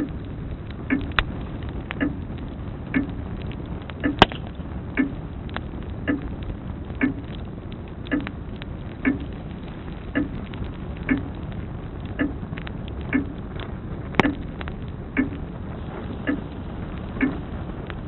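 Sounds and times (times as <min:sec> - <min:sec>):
crackling log fire: 0:00.0 - 0:18.0
sharp pops from fire: 0:00.0 - 0:18.0
grandfather clock ticking: 0:00.9 - 0:01.3, 0:02.0 - 0:02.2, 0:02.9 - 0:03.2, 0:04.0 - 0:04.4, 0:05.0 - 0:05.2, 0:06.1 - 0:06.3, 0:07.0 - 0:07.4, 0:08.1 - 0:08.3, 0:09.0 - 0:09.3, 0:10.1 - 0:10.4, 0:11.0 - 0:11.3, 0:12.2 - 0:12.4, 0:13.1 - 0:13.4, 0:14.2 - 0:14.4, 0:15.2 - 0:15.4, 0:16.2 - 0:16.4.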